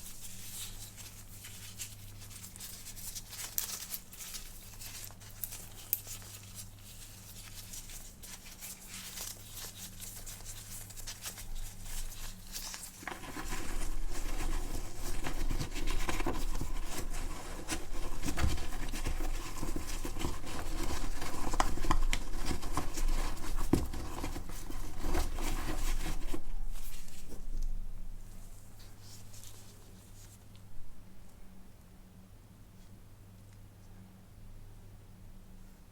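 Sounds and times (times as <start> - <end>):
packaging rustling and crinkling: 0.0 - 30.6.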